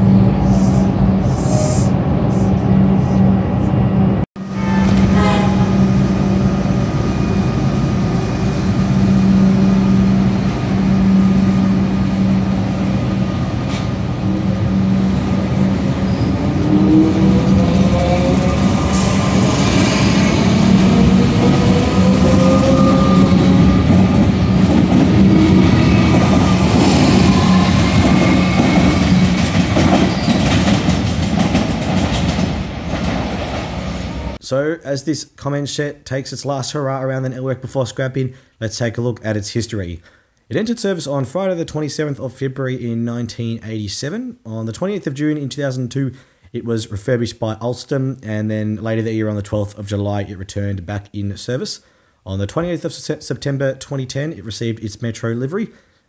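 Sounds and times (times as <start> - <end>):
train running on rails: 0.0 - 34.4.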